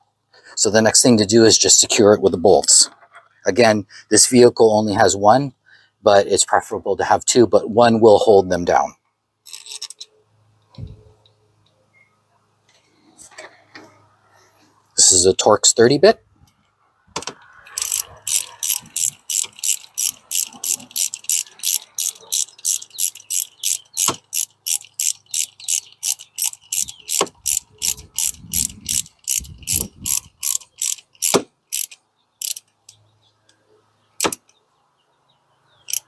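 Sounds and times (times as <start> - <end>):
ratchet clicking: 9.4 - 10.1, 17.7 - 33.0, 34.2 - 34.5.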